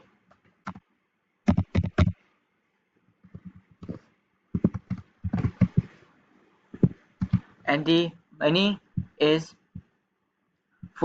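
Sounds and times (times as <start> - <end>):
computer keyboard typing: 0.6 - 0.8, 1.5 - 2.2, 3.3 - 4.0, 4.6 - 5.9, 6.8 - 7.5.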